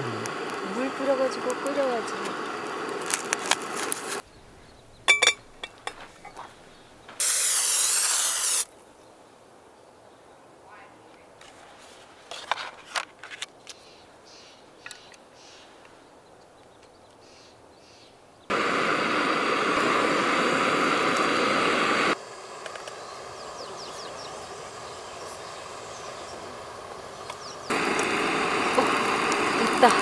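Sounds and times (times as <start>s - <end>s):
sizzling in a frying pan: 0.0s - 4.2s, 18.5s - 30.0s
small crackles: 0.0s - 4.8s, 27.2s - 30.0s.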